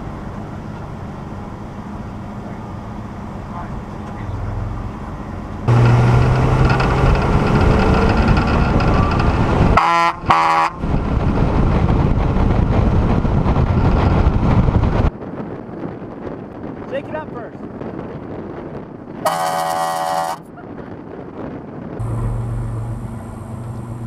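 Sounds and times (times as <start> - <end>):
vehicle rushing: 0.0 - 15.1, 22.0 - 24.0
loud horn blasts: 9.8 - 10.9, 19.2 - 20.5.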